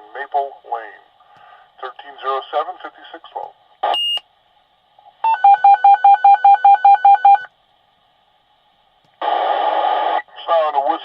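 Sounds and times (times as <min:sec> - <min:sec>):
radio static burst: 0:09.2 - 0:11.0.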